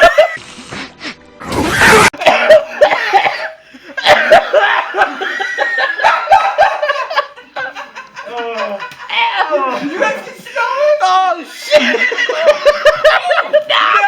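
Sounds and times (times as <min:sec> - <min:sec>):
background music: 0:00.0 - 0:07.2
harsh cough: 0:01.8 - 0:04.9
people laughing: 0:02.2 - 0:14.0.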